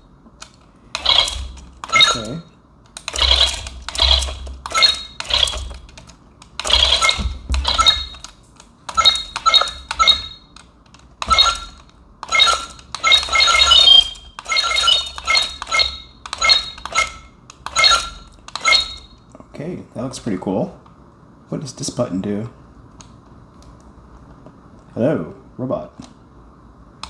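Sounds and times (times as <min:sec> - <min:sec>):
plastic parts clattering: 0:00.4 - 0:02.4, 0:03.0 - 0:19.0
toy robot motors buzzing: 0:00.9 - 0:02.4, 0:03.0 - 0:10.5, 0:11.2 - 0:19.1.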